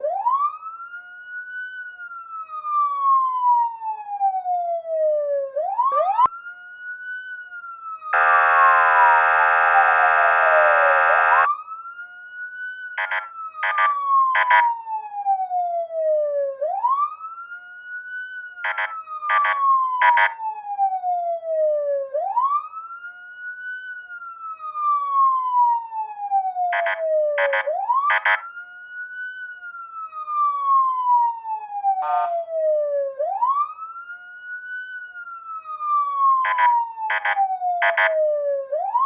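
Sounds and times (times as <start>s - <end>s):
police siren wailing: 0.0s - 39.0s
buzzy horn blasts: 8.2s - 11.5s, 26.8s - 28.4s, 32.0s - 32.4s.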